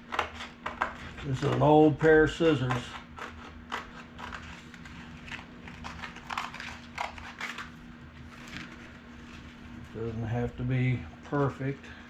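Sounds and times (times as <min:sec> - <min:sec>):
steady low hum: 0:00.0 - 0:12.0
scissors cutting sandpaper: 0:00.1 - 0:07.7.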